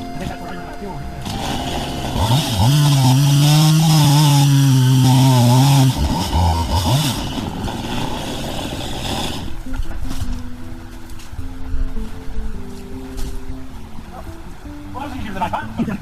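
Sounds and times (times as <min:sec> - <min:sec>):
chainsaw revving: 0:01.2 - 0:09.7.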